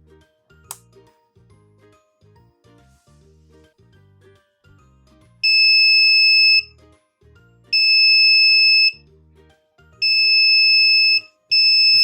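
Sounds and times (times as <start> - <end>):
background music: 0.0 - 12.0
electronic buzzer beeping: 5.4 - 6.7, 7.8 - 9.0, 10.0 - 12.0.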